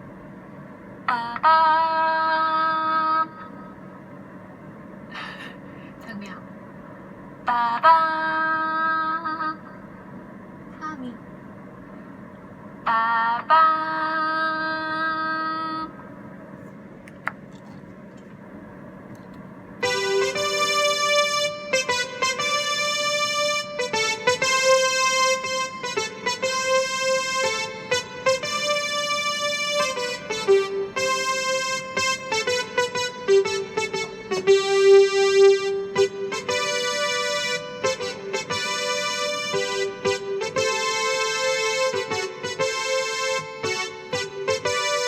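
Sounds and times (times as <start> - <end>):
faint hum: 0.0 - 45.0
electric piano hymn tune: 19.8 - 45.0.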